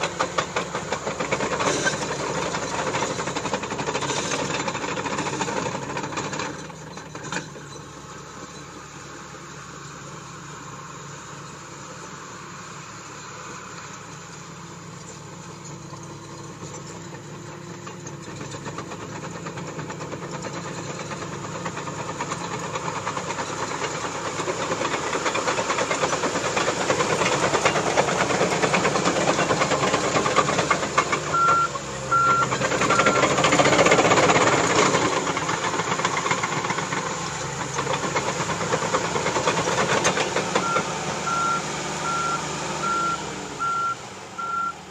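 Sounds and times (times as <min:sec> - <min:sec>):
diesel engine running: 0:00.0 - 0:44.9
tracks clattering: 0:16.9 - 0:41.6
backup alarm beeping: 0:31.3 - 0:33.2, 0:40.6 - 0:44.8.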